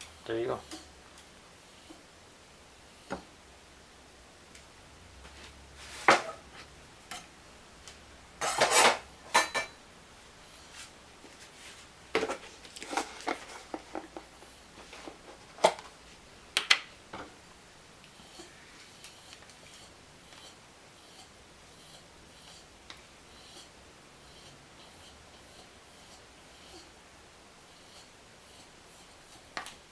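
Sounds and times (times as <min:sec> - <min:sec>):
utensils and dishes clinking: 0:08.4 - 0:09.8.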